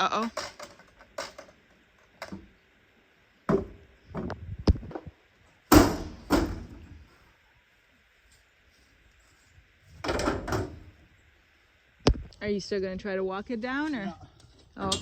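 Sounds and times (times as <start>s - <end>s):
hard knocks and clunks: 5.7s - 6.8s, 10.0s - 10.8s.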